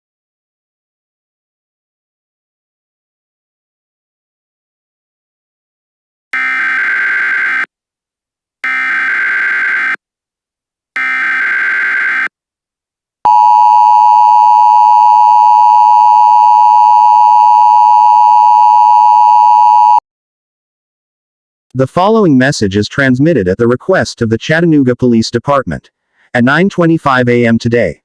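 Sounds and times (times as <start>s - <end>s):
data tone bursts: 13.3s - 20.0s
two-tone attention signal: 13.3s - 20.0s.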